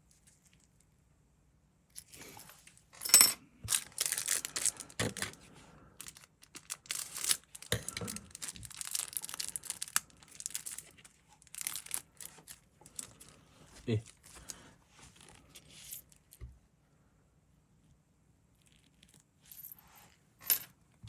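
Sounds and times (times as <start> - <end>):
plastic packaging crinkling and tearing: 3.7 - 5.4, 6.0 - 13.4.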